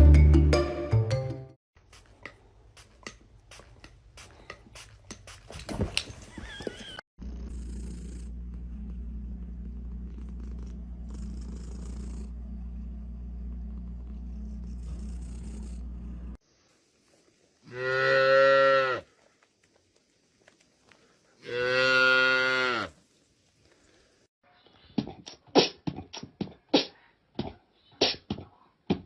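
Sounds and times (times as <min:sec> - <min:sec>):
cat purring: 0:07.2 - 0:16.4.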